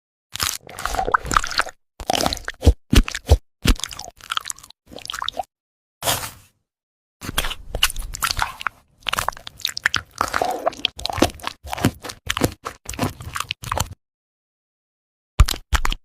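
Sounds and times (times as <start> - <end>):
crunching and chewing crisp food: 0.3 - 5.4, 7.2 - 14.0, 15.4 - 16.0.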